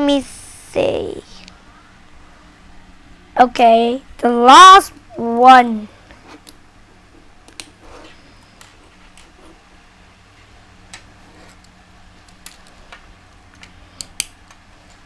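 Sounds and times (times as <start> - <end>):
steady low hum: 0.0 - 15.0
plastic pieces clicking: 12.2 - 14.4.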